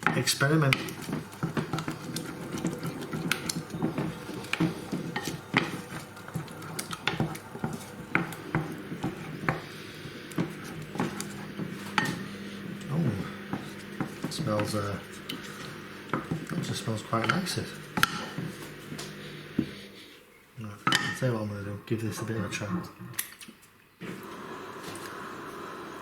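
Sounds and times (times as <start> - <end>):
utensil scraping bowl: 0.0 - 20.2.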